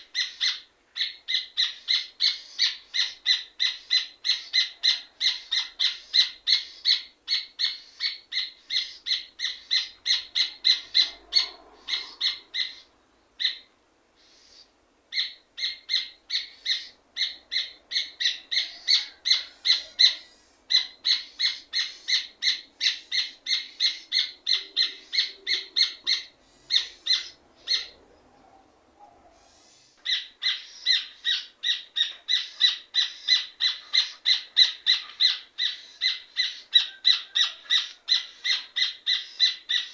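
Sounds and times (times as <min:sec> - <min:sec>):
bird singing ringing notes: 0:15.2 - 0:28.0.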